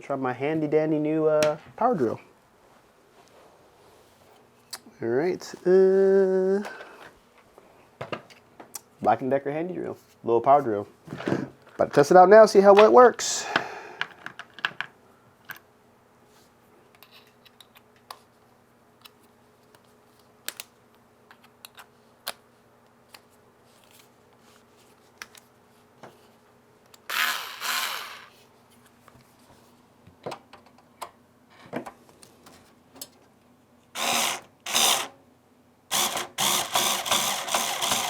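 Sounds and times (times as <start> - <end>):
power drill driving screws: 27.1 - 28.3, 34.0 - 35.1, 35.9 - 38.0.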